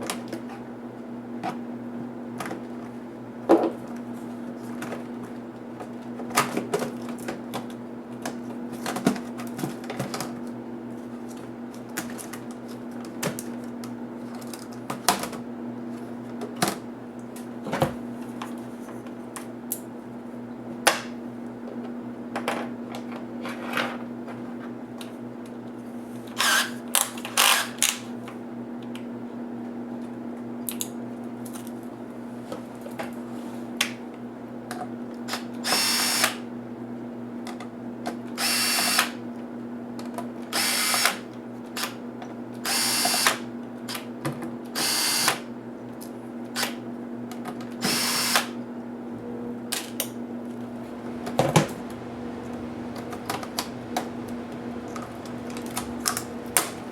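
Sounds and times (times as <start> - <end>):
low hum: 50.4 - 56.9.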